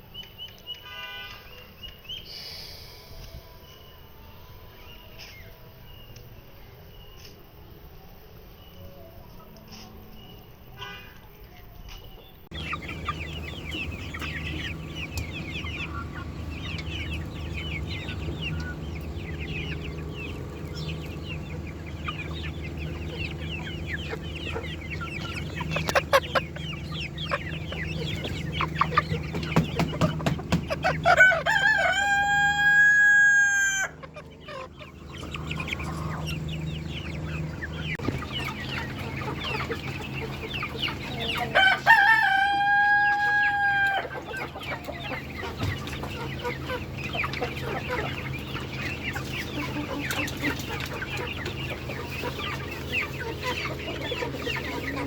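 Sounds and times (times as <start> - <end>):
chickens clucking: 0.0 - 55.0
low hum: 12.5 - 32.6
rooster crowing: 30.8 - 34.1, 41.4 - 44.2.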